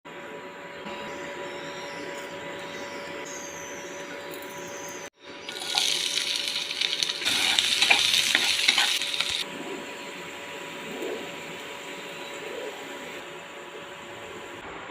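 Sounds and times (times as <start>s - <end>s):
food sizzling in hot oil: 5.5s - 9.4s.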